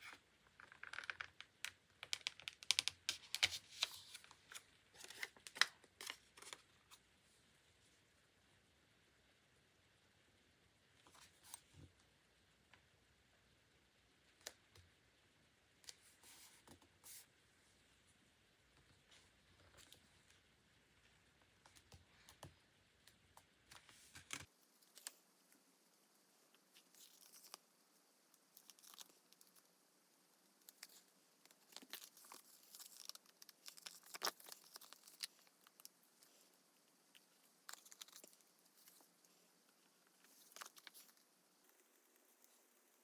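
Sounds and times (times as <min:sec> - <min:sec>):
paper rustling and crinkling: 0:02.7 - 0:07.0.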